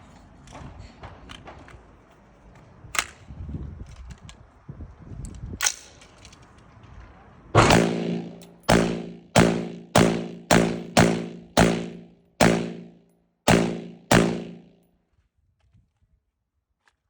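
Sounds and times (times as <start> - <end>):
gunshots with ringing tail: 7.6 - 14.7.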